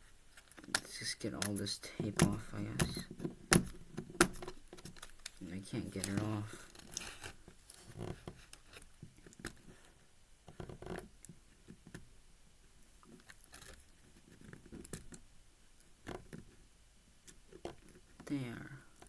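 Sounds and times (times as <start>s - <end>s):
tape peeling off plastic: 0.4s - 8.9s.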